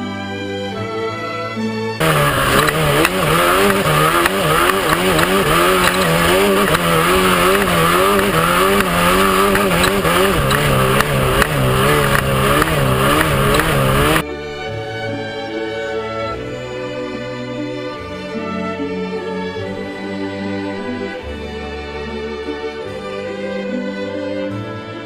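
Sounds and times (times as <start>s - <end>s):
loud driving noise: 2.0s - 14.2s
truck engine running hard: 2.0s - 14.2s.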